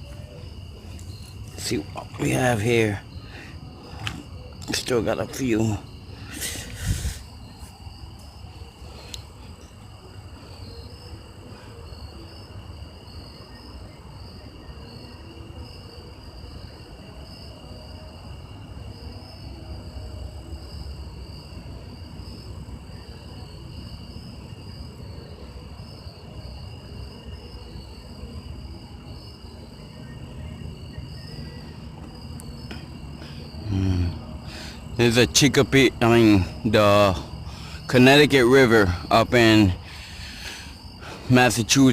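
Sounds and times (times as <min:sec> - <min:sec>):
insects trilling: 0:00.0 - 0:41.9.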